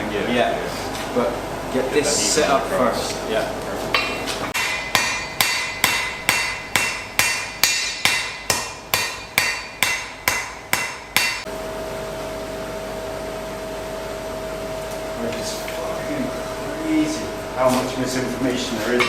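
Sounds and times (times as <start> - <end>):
steady hum: 0.0 - 19.0
hammer striking iron on anvil: 4.0 - 11.5.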